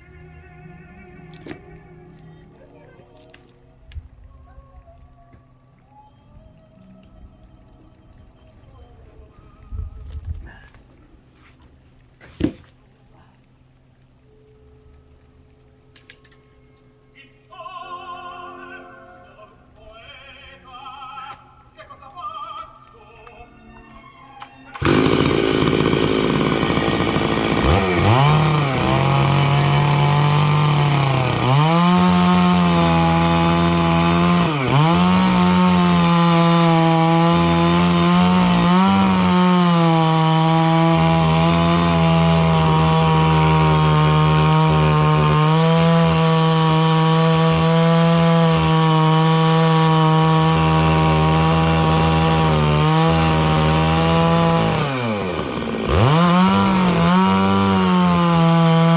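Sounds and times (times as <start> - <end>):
chainsaw cutting wood under load: 1.2 - 2.4, 24.7 - 58.9.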